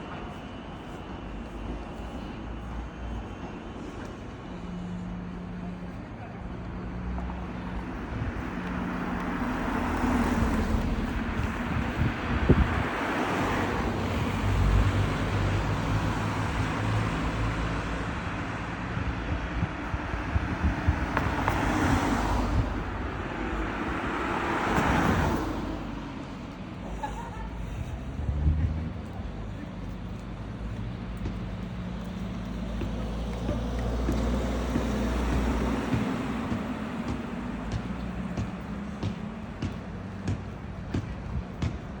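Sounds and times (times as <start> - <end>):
cars passing: 0.0 - 42.0
steady low traffic rumble: 0.0 - 42.0
footsteps walking: 25.5 - 42.0.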